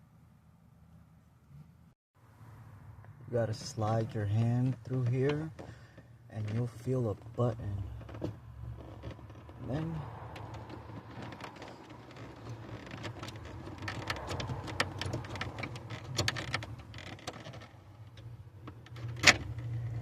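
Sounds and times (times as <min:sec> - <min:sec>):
plastic trim clicks and rustling: 0:10.5 - 0:20.0.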